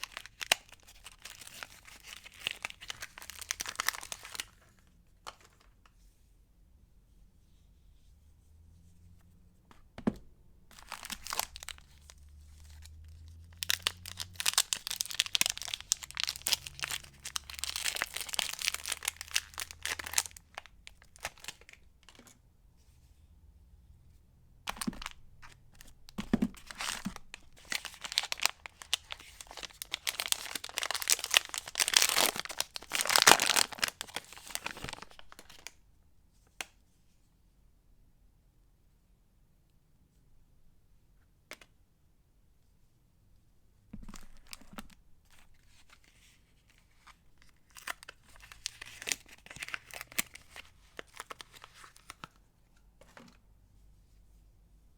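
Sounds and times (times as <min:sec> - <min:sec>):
wrappers crinkling: 0:00.0 - 0:04.5, 0:10.7 - 0:21.8, 0:26.7 - 0:35.7, 0:47.4 - 0:52.2.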